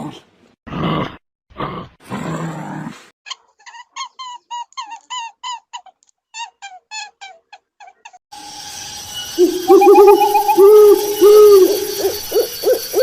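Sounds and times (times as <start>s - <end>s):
animal growling call: 9.4s - 13.0s
high squeaky animal calls: 9.4s - 13.0s.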